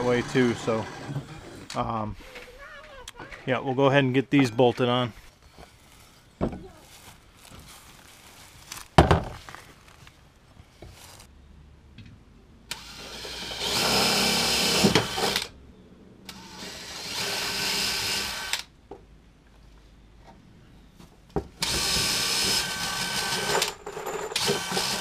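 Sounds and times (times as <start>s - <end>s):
power drill running: 0.0s - 1.7s, 12.7s - 15.5s, 16.3s - 18.7s, 21.6s - 25.0s.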